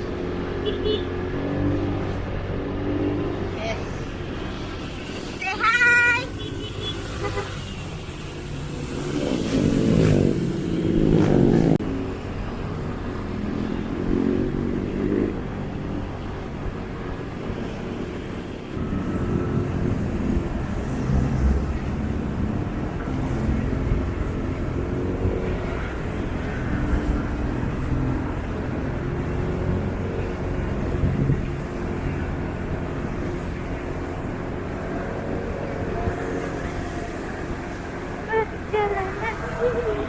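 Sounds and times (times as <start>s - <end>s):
road noise: 0.0s - 40.0s
motorcycle engine: 6.3s - 15.8s, 18.8s - 40.0s.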